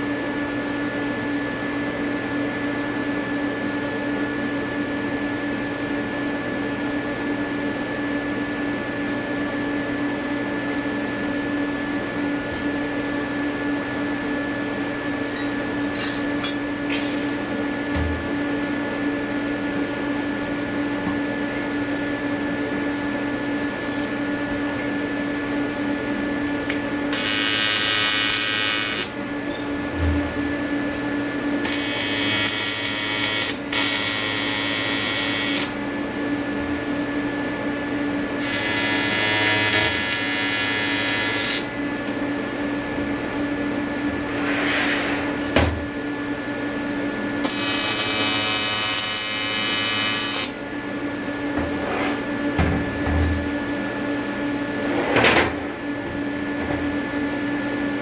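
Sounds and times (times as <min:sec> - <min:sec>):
welder humming: 0:14.7 - 0:20.2, 0:23.7 - 0:29.2, 0:31.6 - 0:35.9, 0:38.4 - 0:41.8, 0:47.4 - 0:50.7
welding arc buzzing: 0:15.9 - 0:17.5, 0:26.7 - 0:29.2, 0:31.6 - 0:35.8, 0:38.4 - 0:41.8, 0:47.4 - 0:50.6.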